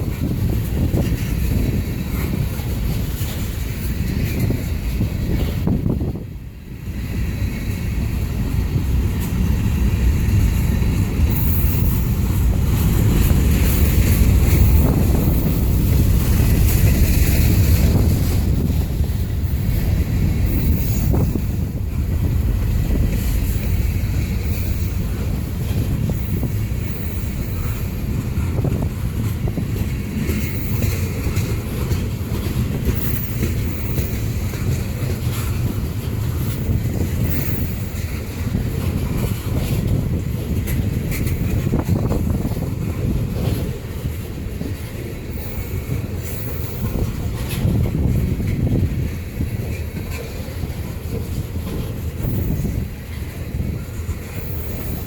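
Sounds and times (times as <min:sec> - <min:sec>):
wind buffeting microphone: 0:00.0 - 0:55.0.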